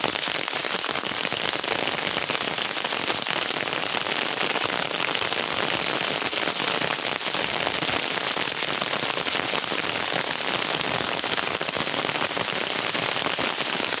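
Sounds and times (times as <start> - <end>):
steady rain: 0.0 - 14.0.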